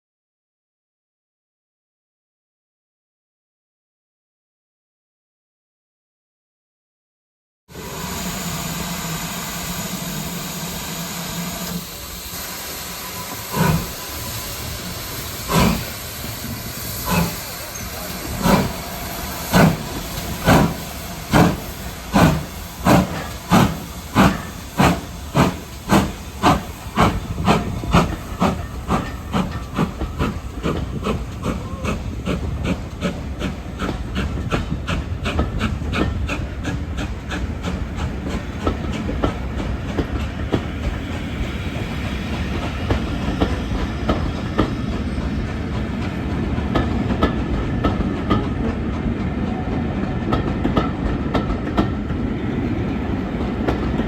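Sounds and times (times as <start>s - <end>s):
steam hissing: 7.7s - 48.0s
steam locomotive exhaust chuffs: 7.7s - 54.0s.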